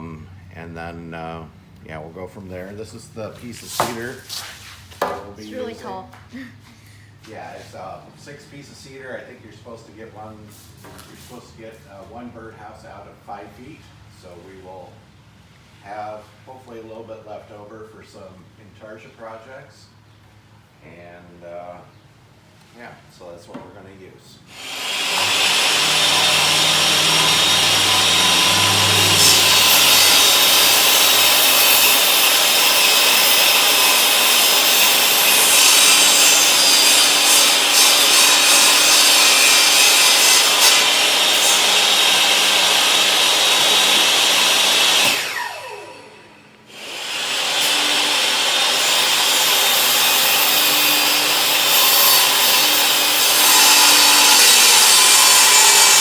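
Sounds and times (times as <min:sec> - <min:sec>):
table saw cutting wood: 0:03.4 - 0:05.7, 0:24.5 - 0:56.0
table saw winding down: 0:24.5 - 0:56.0.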